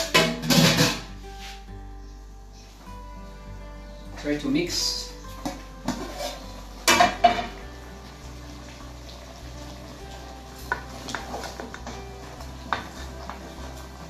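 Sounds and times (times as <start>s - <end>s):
utensil scraping against pot: 5.9s - 7.2s.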